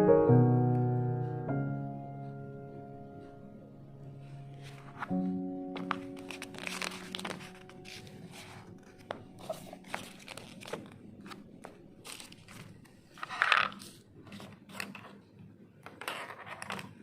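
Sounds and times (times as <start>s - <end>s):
packaging rustling and crinkling: 5.8s - 15.2s.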